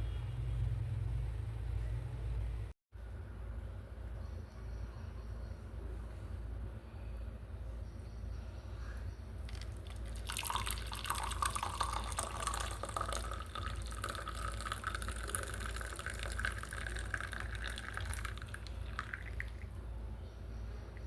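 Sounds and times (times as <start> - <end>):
liquid pouring into vessel: 9.4 - 19.8.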